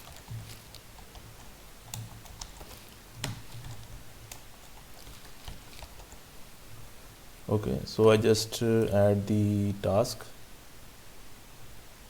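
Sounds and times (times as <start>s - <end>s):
computer keyboard keystrokes: 0.0s - 6.2s
room hum: 0.0s - 12.0s.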